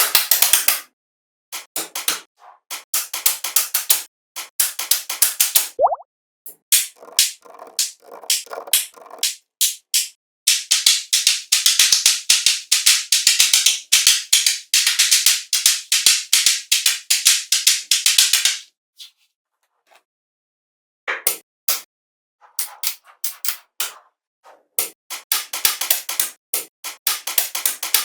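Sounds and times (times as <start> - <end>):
rapid sharp clicks and pops: 6.7 - 18.7.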